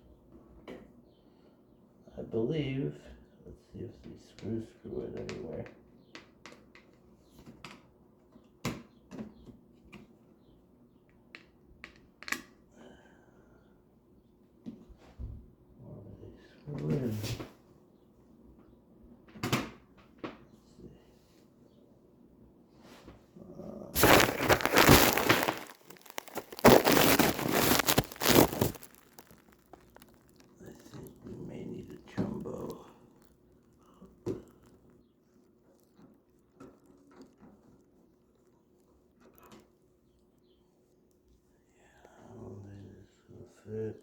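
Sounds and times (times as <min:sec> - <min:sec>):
rustling crinkling handling noise: 0:24.0 - 0:34.8.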